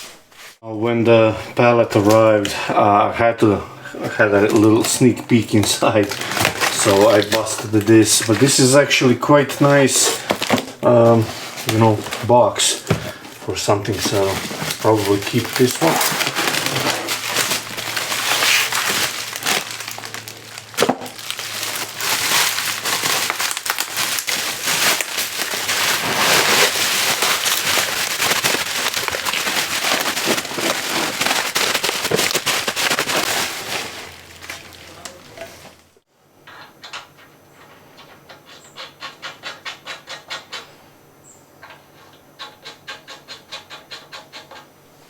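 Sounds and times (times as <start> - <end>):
packing material crackling and rustling: 4.0 - 36.0.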